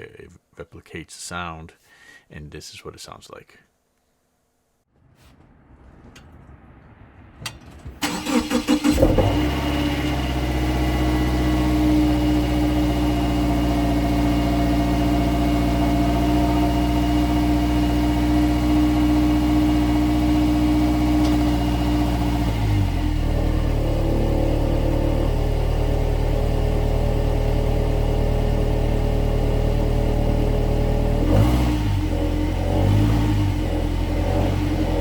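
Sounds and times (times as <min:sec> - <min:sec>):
metallic rattle in muffler: 0:07.3 - 0:13.5
car engine idling: 0:07.3 - 0:31.4
car engine cranking: 0:07.4 - 0:13.5, 0:20.6 - 0:26.1.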